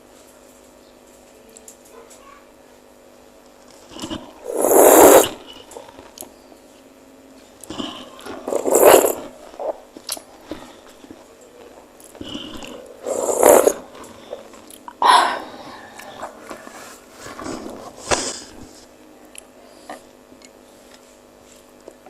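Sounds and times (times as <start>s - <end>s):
slurping and chewing soup: 3.7s - 6.3s, 7.6s - 18.7s.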